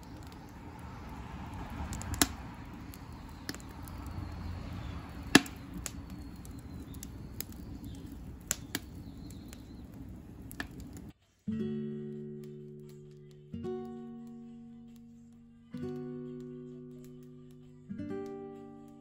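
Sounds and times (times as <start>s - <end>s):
wood fire rumbling: 0.0s - 11.1s
burning wood popping and cracking: 0.0s - 11.2s, 12.0s - 19.0s.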